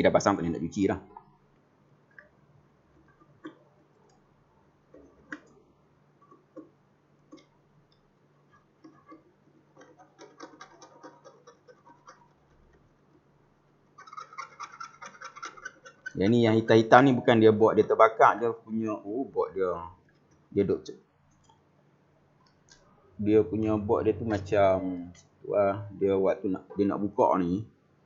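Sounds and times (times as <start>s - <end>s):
faint low hum: 0.0s - 28.0s
small tool clicking and scratching: 6.2s - 13.3s, 13.9s - 16.2s.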